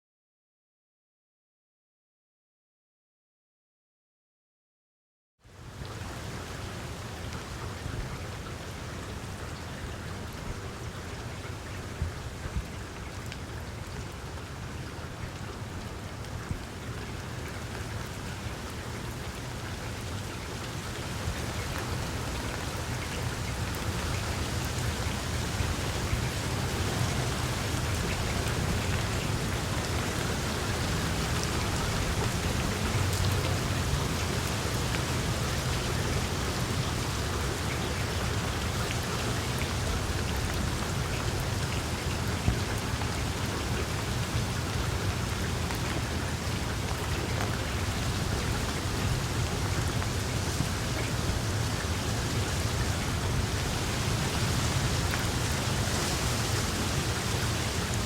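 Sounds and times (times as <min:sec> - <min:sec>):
rain falling on leaves: 0:05.5 - 0:58.0.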